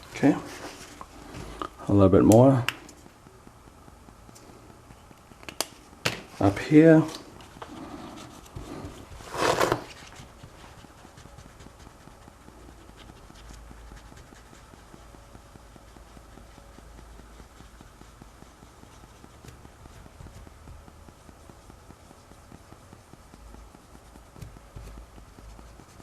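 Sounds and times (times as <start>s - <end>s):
small ticks: 3.0s - 5.7s, 11.7s - 26.0s.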